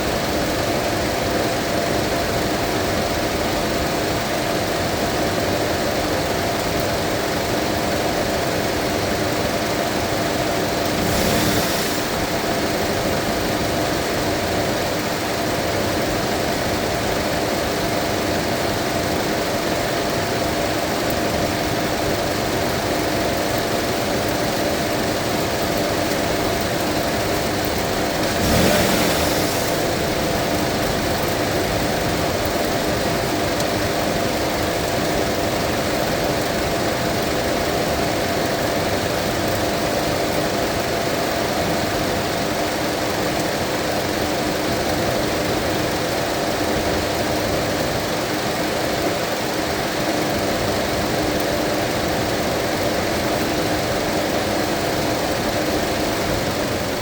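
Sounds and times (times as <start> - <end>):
car engine idling: 10.4 - 14.2, 24.5 - 34.6.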